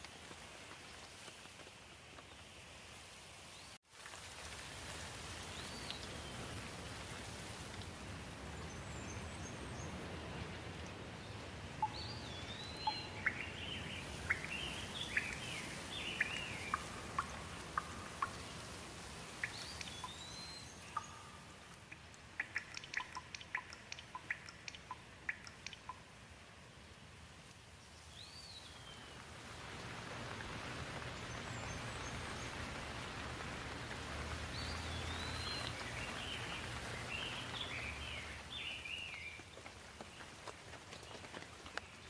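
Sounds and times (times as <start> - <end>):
steady rain falling: 0.0 - 42.0
songbirds whistling: 11.8 - 18.4, 34.5 - 39.4
sharp ticks: 21.0 - 26.0.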